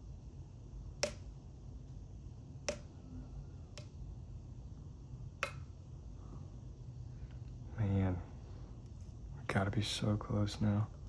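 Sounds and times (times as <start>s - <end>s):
faint low hum: 0.0s - 11.0s.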